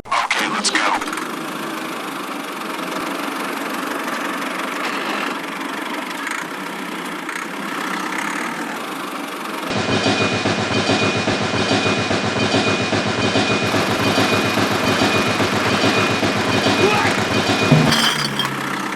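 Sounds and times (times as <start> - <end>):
engine running: 9.7 - 18.9.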